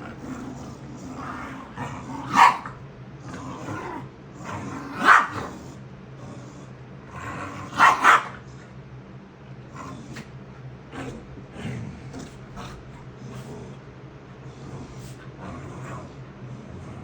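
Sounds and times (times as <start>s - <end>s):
low dog noises: 0.0s - 8.9s, 9.6s - 17.0s
dog barking: 2.2s - 2.8s, 4.9s - 5.5s, 7.6s - 8.5s.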